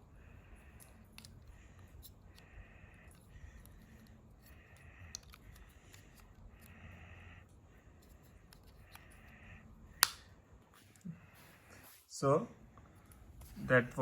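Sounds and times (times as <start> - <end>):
charging case handling clicks: 10.0 - 10.3.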